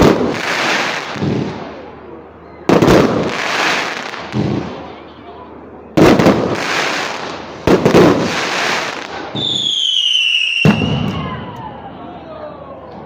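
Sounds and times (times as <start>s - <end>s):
firework crack: 0.0s - 11.9s
firework bang: 2.7s - 4.9s, 6.0s - 9.8s, 10.6s - 11.6s
whistling firework: 5.9s - 13.0s.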